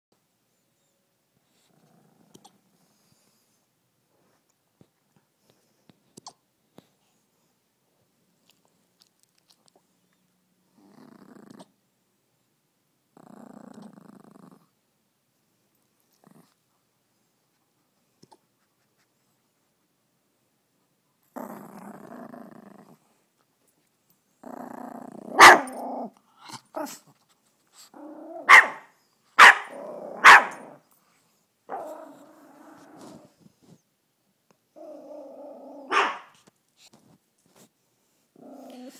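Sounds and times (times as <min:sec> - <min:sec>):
puppy growling: 0:01.6 - 0:02.8, 0:10.7 - 0:11.8, 0:13.1 - 0:14.8, 0:16.1 - 0:16.6, 0:21.2 - 0:23.2, 0:24.4 - 0:27.1, 0:27.8 - 0:28.8, 0:29.5 - 0:30.9, 0:31.7 - 0:33.4, 0:34.7 - 0:36.2, 0:38.4 - 0:38.9
puppy barking: 0:25.3 - 0:25.8, 0:28.4 - 0:30.8, 0:35.9 - 0:36.4.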